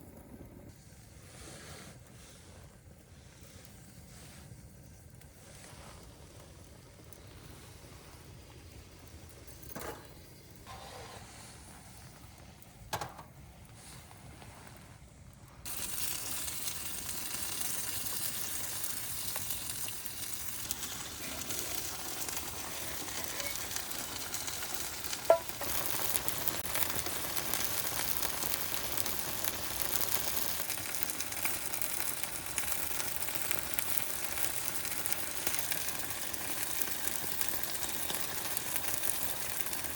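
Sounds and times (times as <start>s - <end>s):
food sizzling in a pan: 15.6s - 39.9s.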